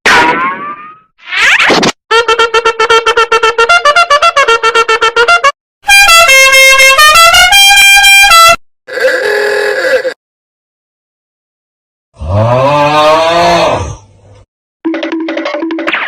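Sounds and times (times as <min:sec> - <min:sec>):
brassy horn-like tune: 0:02.1 - 0:08.6.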